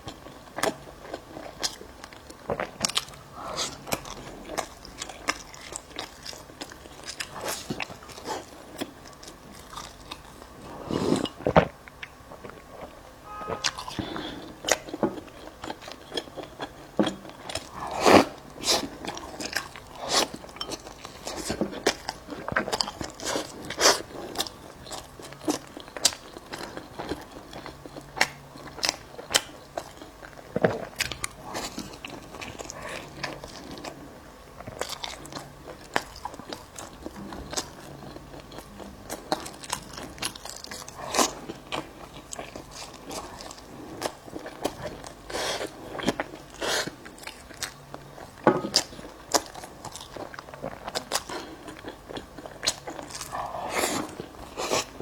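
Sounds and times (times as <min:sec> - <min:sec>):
crunchy biting and chewing: 0:00.1 - 0:11.7, 0:34.6 - 0:55.0.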